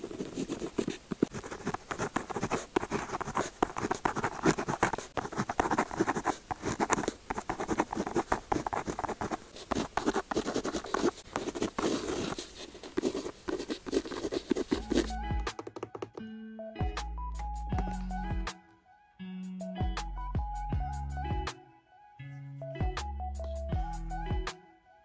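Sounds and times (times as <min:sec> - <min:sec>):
pen scratching on paper: 0:00.0 - 0:15.2.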